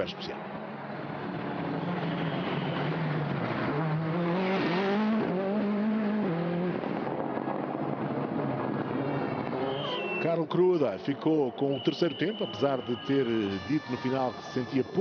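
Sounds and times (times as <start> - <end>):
rally car engine revving: 1.0 - 9.8.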